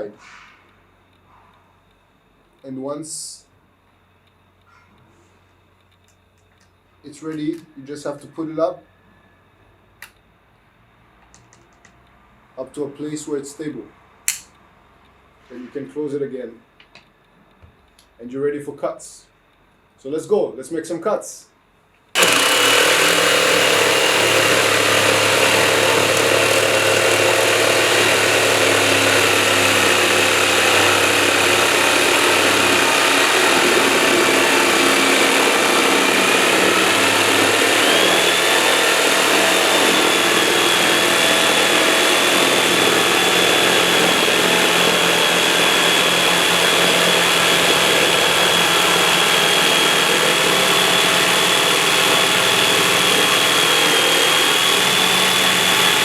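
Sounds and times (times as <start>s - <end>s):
electric jigsaw cutting: 22.2s - 56.0s.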